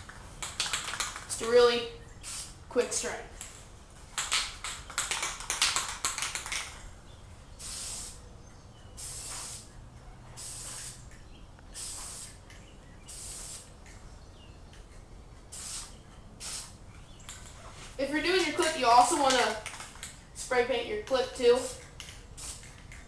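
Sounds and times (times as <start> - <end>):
spray paint can hissing: 2.2 - 2.6, 4.2 - 6.8, 7.6 - 8.2, 9.0 - 9.7, 10.4 - 14.0, 15.4 - 23.0.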